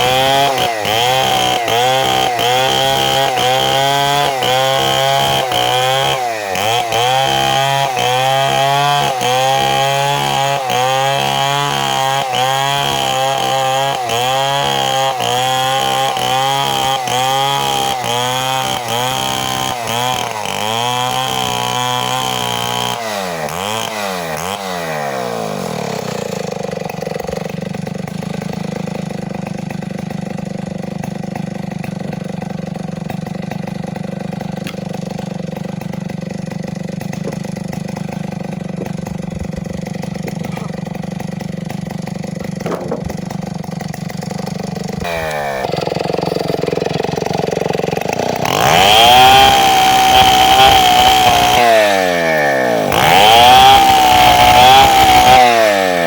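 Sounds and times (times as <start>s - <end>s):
chainsaw revving and idling: 0.0s - 56.0s.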